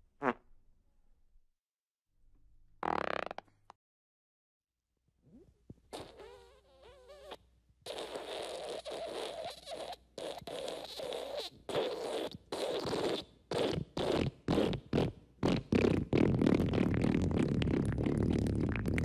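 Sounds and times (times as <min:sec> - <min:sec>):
squeaky fart: 0:00.2 - 0:00.5, 0:02.8 - 0:03.6, 0:05.2 - 0:19.0
long wet sputtering fart: 0:02.8 - 0:03.5, 0:05.9 - 0:19.0.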